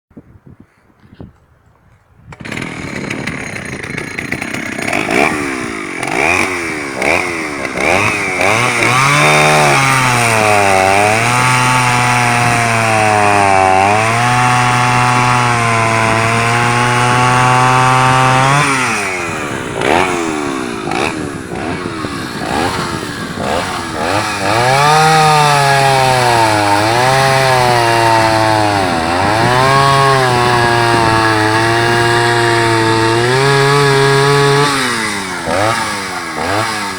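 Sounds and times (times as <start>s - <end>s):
chainsaw revving: 2.3s - 36.9s.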